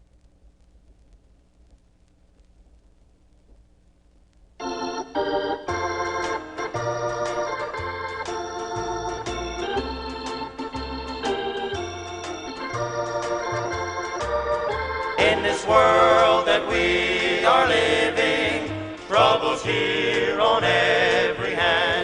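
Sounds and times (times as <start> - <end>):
organ-like keyboard chords: 4.6 - 22.0.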